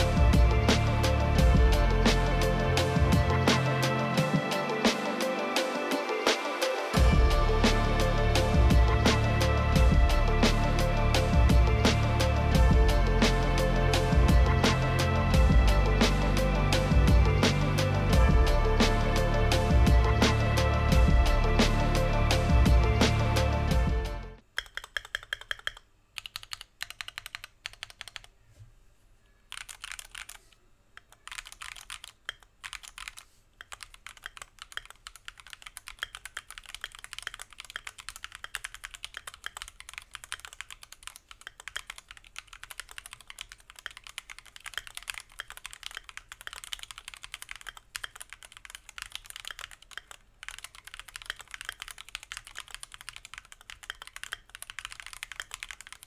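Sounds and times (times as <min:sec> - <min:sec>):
fast mechanical keyboard typing: 0:24.5 - 0:28.3, 0:29.5 - 0:56.0.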